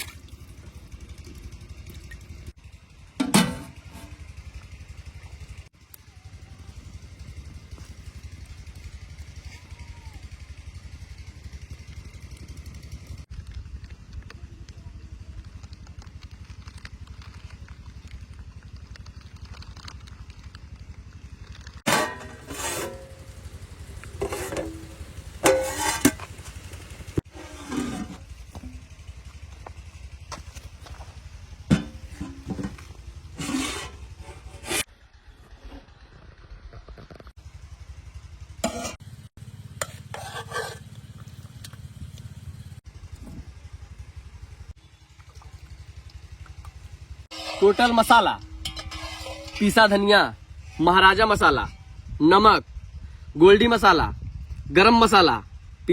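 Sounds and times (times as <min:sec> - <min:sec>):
small engine running: 0:00.1 - 0:54.4
spatula scraping a pan: 0:21.9 - 0:23.4, 0:24.2 - 0:26.4, 0:27.2 - 0:28.8, 0:31.8 - 0:34.9, 0:38.6 - 0:39.0, 0:39.8 - 0:41.0, 0:47.2 - 0:51.0
steady low rumble: 0:45.6 - 0:54.8.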